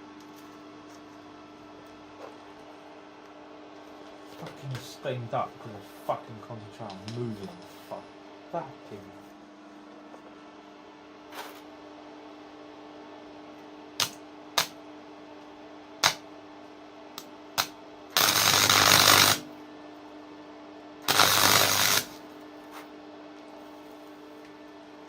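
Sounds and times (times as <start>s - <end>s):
steady welder hum: 0.0s - 25.0s
welding arc bursts: 14.0s - 14.7s, 16.0s - 16.2s, 17.6s - 19.5s, 21.1s - 22.2s
welding arc crackling snaps: 14.0s - 14.8s, 16.0s - 16.2s, 17.2s - 19.5s, 21.1s - 22.2s.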